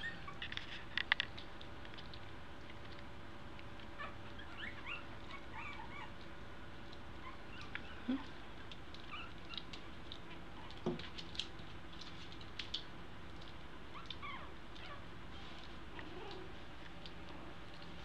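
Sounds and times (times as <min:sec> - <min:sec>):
puppies squeaking: 0:00.0 - 0:00.9, 0:04.0 - 0:06.2, 0:07.2 - 0:08.3, 0:09.0 - 0:10.8, 0:13.9 - 0:16.5.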